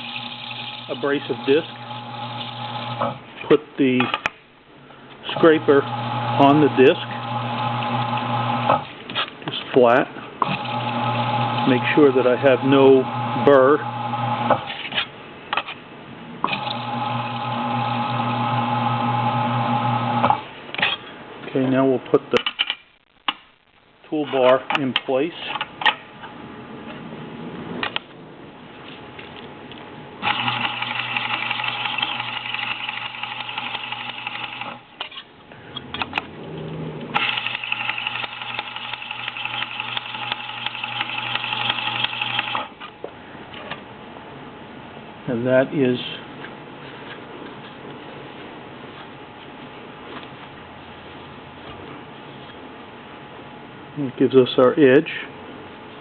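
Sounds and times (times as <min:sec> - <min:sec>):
abrasive disc grinding steel: 0:00.0 - 0:03.2, 0:05.3 - 0:08.8, 0:30.2 - 0:35.3
sharpening disc humming and whining: 0:00.0 - 0:03.2, 0:05.4 - 0:08.9, 0:10.4 - 0:15.1, 0:16.5 - 0:20.4, 0:30.2 - 0:36.2, 0:37.2 - 0:42.9.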